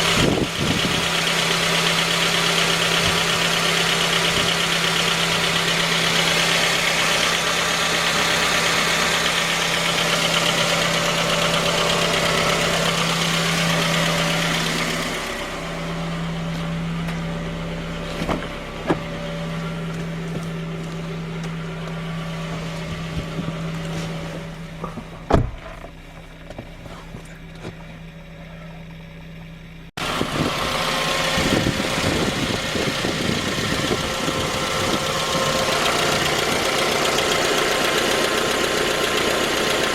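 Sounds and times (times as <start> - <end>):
engine running with a knock: 0.0 - 7.6, 16.5 - 39.9.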